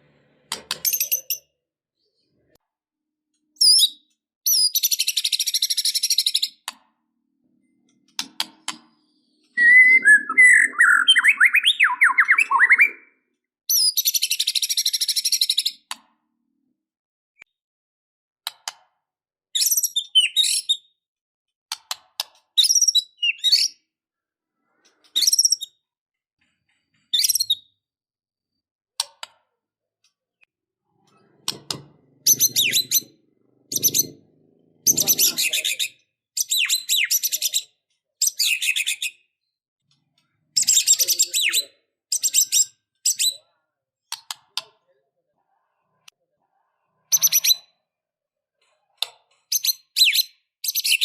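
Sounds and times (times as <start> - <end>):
songbird singing varied phrases: 9.6 - 13.2.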